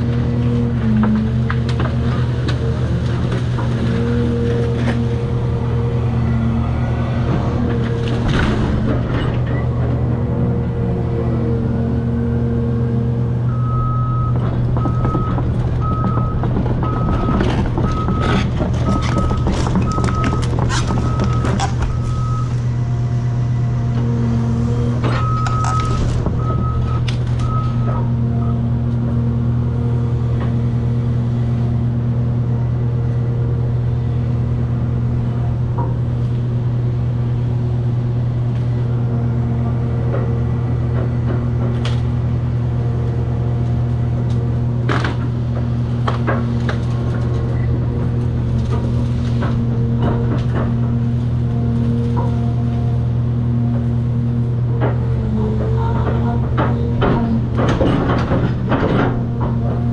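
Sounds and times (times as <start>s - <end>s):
excavator diesel engine running: 0.0s - 59.9s
demolition debris clattering: 13.6s - 22.7s, 24.6s - 31.3s, 43.5s - 59.9s.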